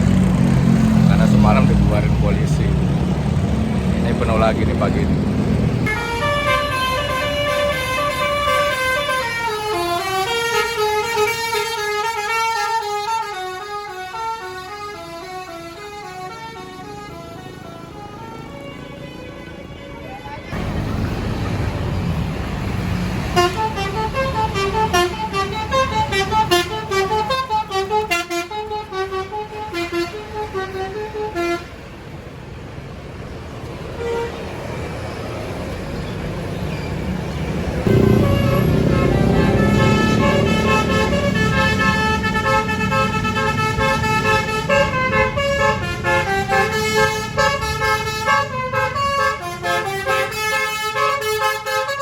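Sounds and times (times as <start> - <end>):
bus engine rumbling: 0.0 - 52.0
multi-tone bus horn melody: 5.8 - 20.7, 23.1 - 32.2, 34.0 - 34.8, 37.8 - 52.0.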